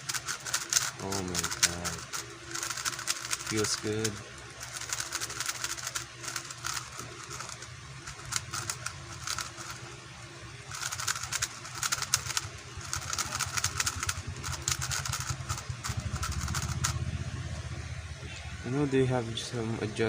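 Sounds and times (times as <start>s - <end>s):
puzzle cube clicking: 0.0s - 9.8s, 10.7s - 17.0s
low engine hum: 11.8s - 20.0s.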